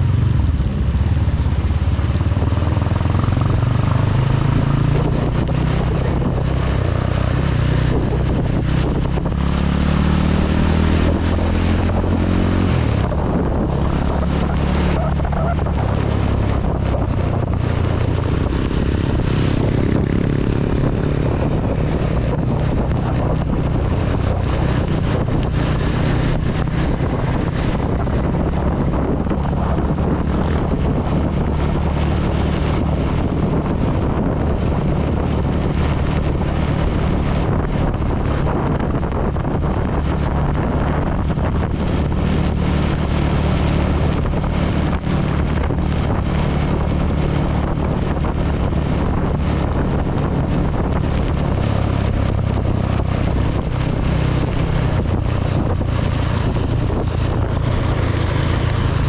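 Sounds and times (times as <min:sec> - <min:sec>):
heavy rain: 0:00.0 - 0:07.9, 0:12.7 - 0:20.8, 0:41.2 - 0:59.0
motorcycle engine running: 0:00.0 - 0:59.0
wind noise on microphone: 0:00.0 - 0:59.0.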